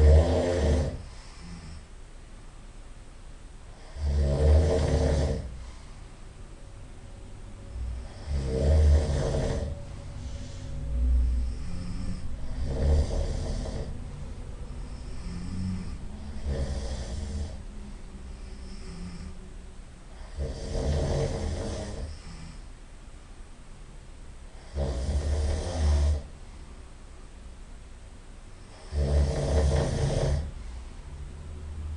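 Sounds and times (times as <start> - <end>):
deep rattling snores: 0.0 - 1.9, 3.7 - 5.8, 7.9 - 17.7, 18.3 - 19.4, 20.1 - 22.7, 24.5 - 26.3, 28.6 - 30.6.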